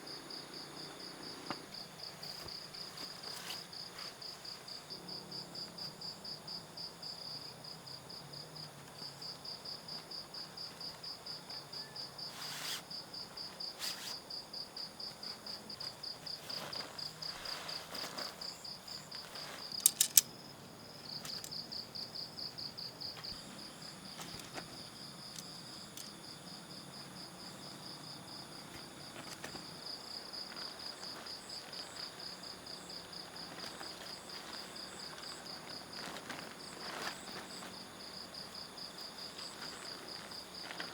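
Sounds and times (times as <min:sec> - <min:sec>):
cricket chirring: 0:00.0 - 0:40.9
sharp clicks: 0:19.8 - 0:20.3.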